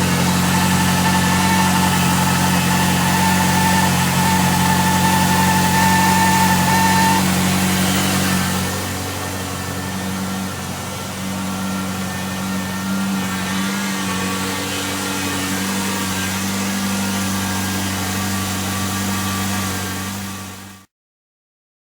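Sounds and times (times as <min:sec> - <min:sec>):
car engine idling: 0:00.0 - 0:13.2
accessory belt drive running: 0:00.0 - 0:20.0.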